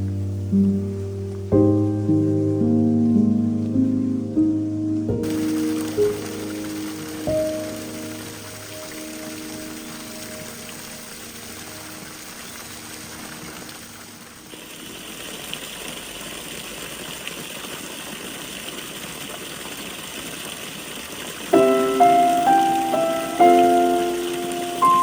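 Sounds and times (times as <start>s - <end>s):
piano music: 0.0s - 14.4s, 21.5s - 25.0s
running spring water: 0.0s - 25.0s.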